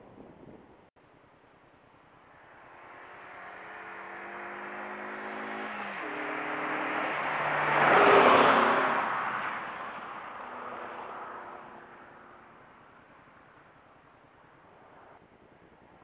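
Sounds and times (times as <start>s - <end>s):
car engine at full throttle passing: 2.2s - 13.4s.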